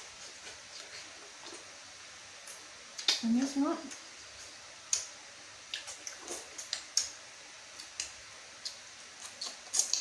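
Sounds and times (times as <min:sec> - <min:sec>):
wet mouth clicks and smacks eating: 0:02.5 - 0:03.2, 0:04.9 - 0:05.1, 0:05.7 - 0:07.2, 0:07.8 - 0:10.0.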